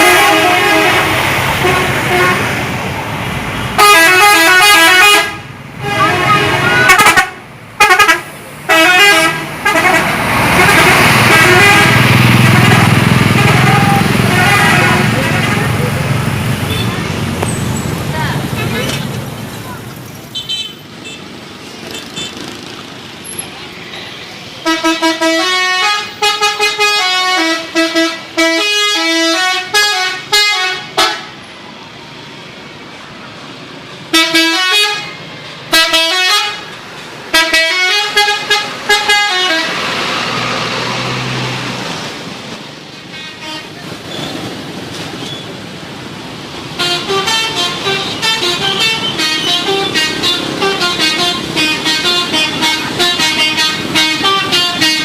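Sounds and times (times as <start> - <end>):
bus musical horns: 0.0 - 2.7, 3.7 - 17.2, 24.6 - 31.4, 34.0 - 40.7, 43.1 - 44.4, 46.7 - 55.0
road and engine noise: 0.0 - 55.0.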